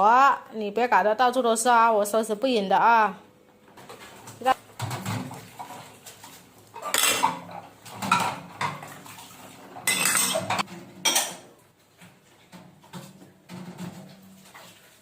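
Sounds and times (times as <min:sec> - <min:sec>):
dishes and cutlery clattering: 0:06.7 - 0:09.2, 0:09.8 - 0:11.5.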